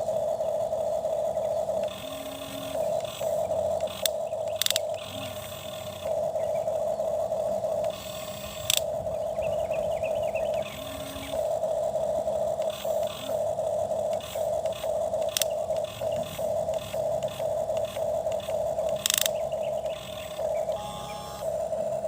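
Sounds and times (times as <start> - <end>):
toy excavator whining: 1.1 - 22.0
sharp click: 1.8 - 5.4, 14.1 - 20.4.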